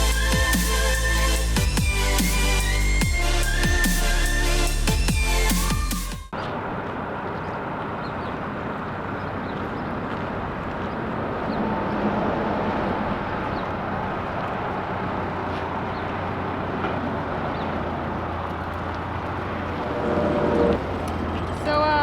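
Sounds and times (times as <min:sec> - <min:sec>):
vehicle engine running: 0:06.3 - 0:22.0.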